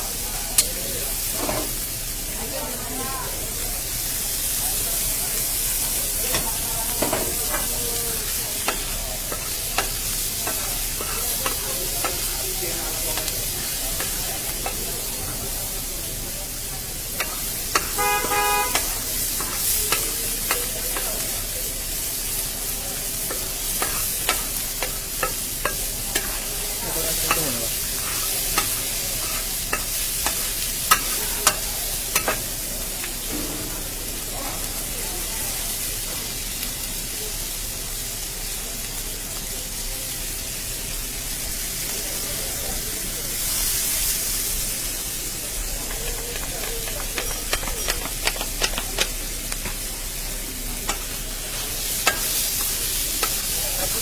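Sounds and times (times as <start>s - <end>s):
food sizzling: 0.0s - 54.0s
metal utensils clinking: 6.2s - 21.7s, 22.9s - 32.6s, 45.4s - 54.0s
vehicle horn: 17.8s - 19.1s.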